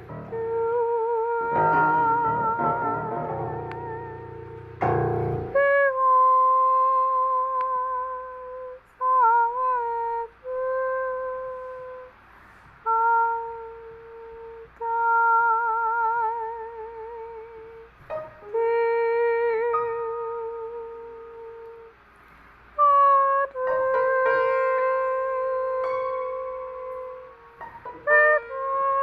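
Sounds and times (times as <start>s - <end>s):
slow melody with vibrato: 0.0s - 29.0s.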